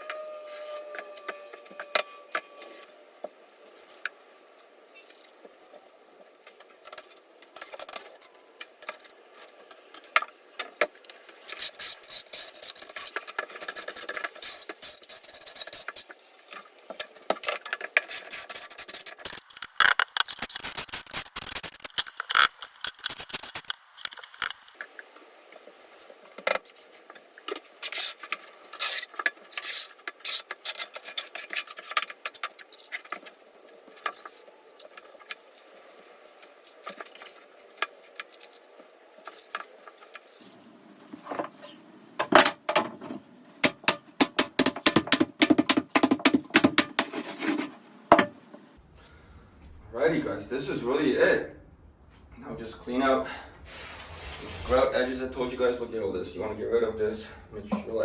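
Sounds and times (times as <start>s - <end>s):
trowel scraping mortar: 17.0s - 24.7s, 53.7s - 54.9s.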